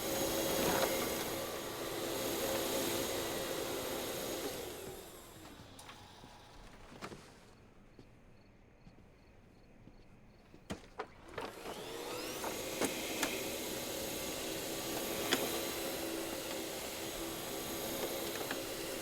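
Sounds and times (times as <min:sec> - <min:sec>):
vacuum cleaner motor running: 0:00.0 - 0:07.1, 0:11.2 - 0:19.0.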